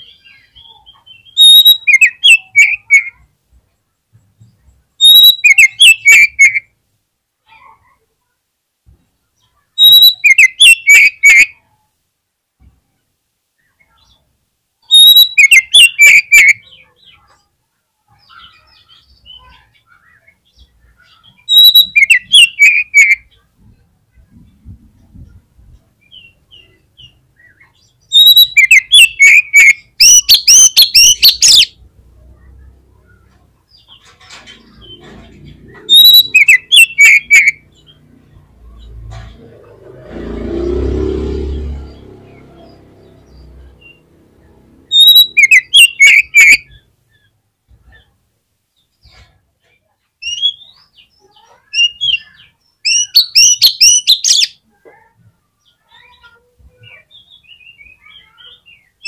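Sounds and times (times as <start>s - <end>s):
bird singing fast chirps: 0.0s - 3.2s, 5.0s - 6.7s, 9.8s - 11.6s, 14.8s - 17.3s, 18.3s - 23.4s, 26.0s - 31.8s, 34.6s - 38.1s, 44.9s - 47.3s, 50.2s - 54.6s.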